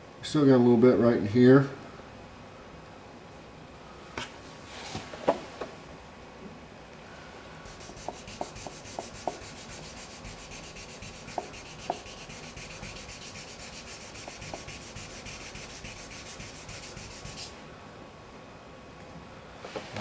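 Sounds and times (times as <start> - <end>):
sandpaper sanding painted panel: 7.7 - 17.6.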